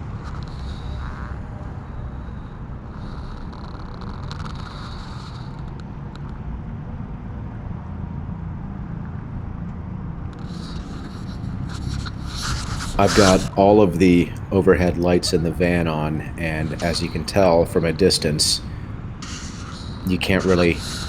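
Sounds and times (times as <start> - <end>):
low outdoor rumble: 5.4 - 21.0.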